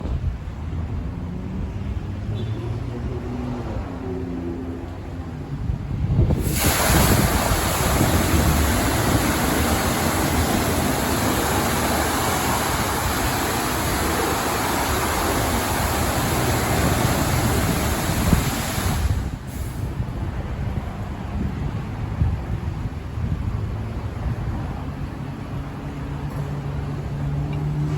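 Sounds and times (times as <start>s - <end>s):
high-pressure water jets spraying: 6.3s - 19.8s.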